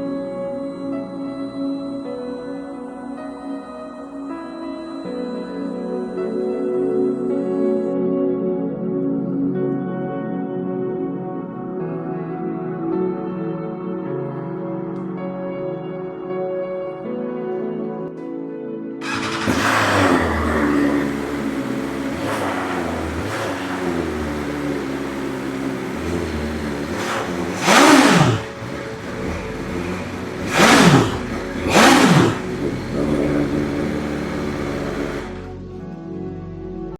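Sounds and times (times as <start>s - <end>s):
motorcycle engine accelerating: 19.0s - 35.6s.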